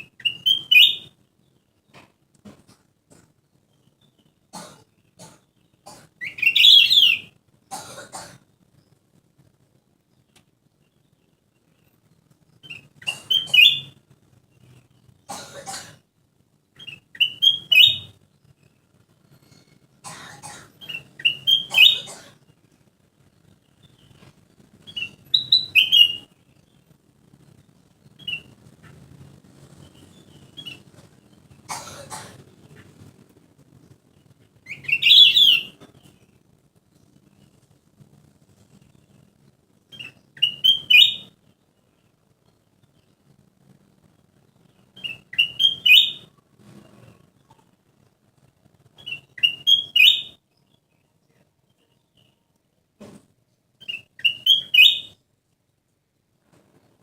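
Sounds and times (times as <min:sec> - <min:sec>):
bird singing whistled notes: 0:00.0 - 0:01.1, 0:06.2 - 0:07.4, 0:12.6 - 0:14.0, 0:16.8 - 0:18.2, 0:20.8 - 0:22.1, 0:24.8 - 0:26.3, 0:34.7 - 0:35.8, 0:39.9 - 0:41.3, 0:45.0 - 0:46.3, 0:49.0 - 0:50.4, 0:53.8 - 0:55.2
bird chirping: 0:00.0 - 0:15.8, 0:16.5 - 0:37.8, 0:38.5 - 0:52.6, 0:53.8 - 0:55.3.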